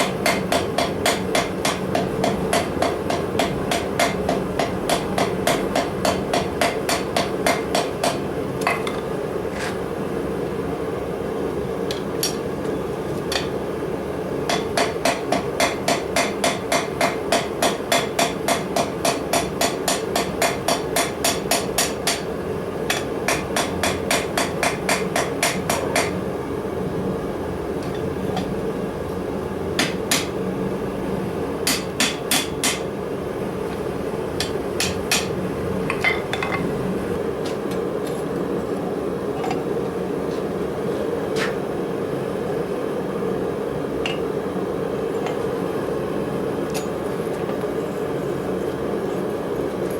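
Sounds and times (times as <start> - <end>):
hammer striking steel on anvil: 0.0 - 8.3, 14.5 - 22.3, 22.9 - 26.2, 29.8 - 30.3, 31.6 - 32.9, 34.4 - 36.6.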